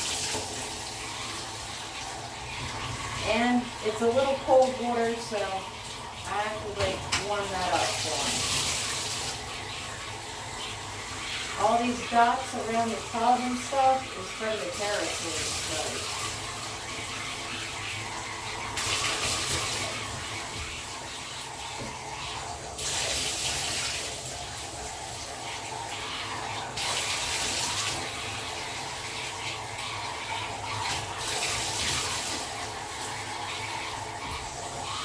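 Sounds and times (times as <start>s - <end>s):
tap water running: 0.0s - 35.0s
water stream splashing: 0.0s - 35.0s.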